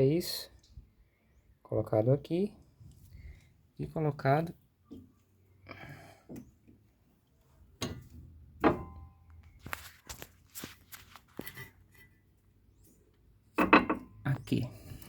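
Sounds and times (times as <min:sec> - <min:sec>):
metallic ring: 0:07.8 - 0:09.2.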